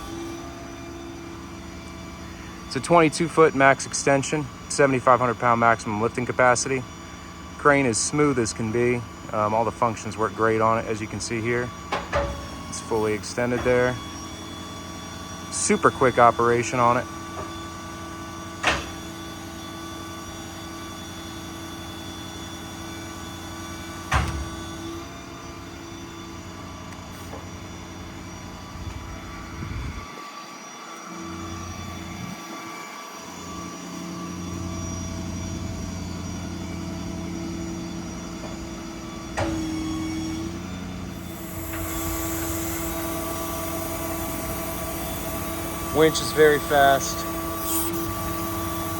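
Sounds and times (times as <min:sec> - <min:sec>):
hydraulic machine hum: 0:00.0 - 0:48.9
hiss: 0:41.2 - 0:48.9.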